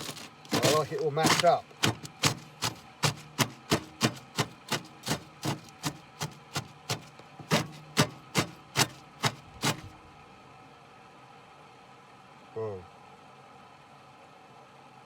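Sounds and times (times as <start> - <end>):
utensil tapping and scraping pot: 0.0 - 9.9.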